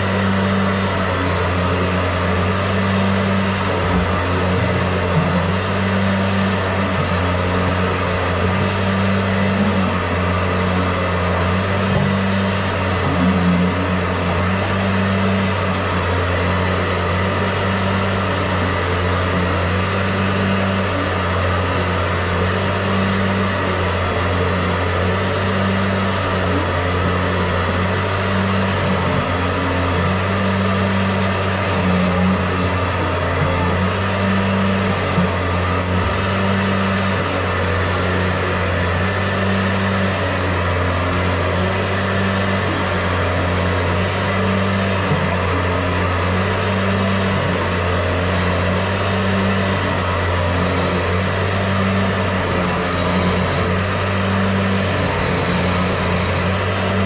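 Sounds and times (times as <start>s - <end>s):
electric motor humming: 40.8s - 57.0s.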